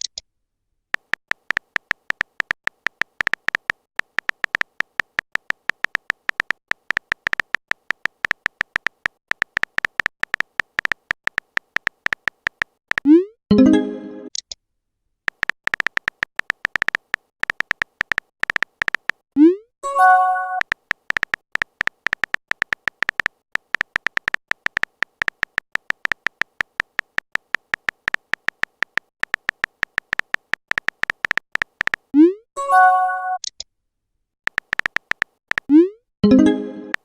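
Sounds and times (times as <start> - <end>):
smartphone keyboard clicks: 1.0 - 13.1, 15.3 - 19.2, 20.6 - 32.1, 34.5 - 35.7
message alert chime: 13.5 - 14.3, 19.8 - 20.6, 32.6 - 33.4, 36.2 - 37.0.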